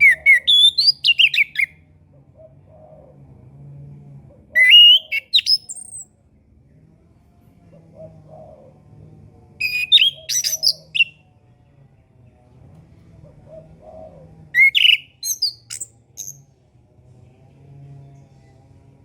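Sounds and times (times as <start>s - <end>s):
thrush singing: 0.0s - 1.8s, 7.9s - 16.5s
faint low hum: 0.0s - 19.0s.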